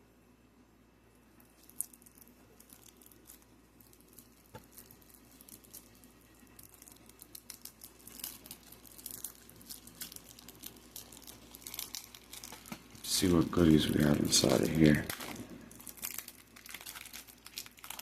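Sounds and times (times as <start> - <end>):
packaging crinkling and tearing: 1.4 - 18.0.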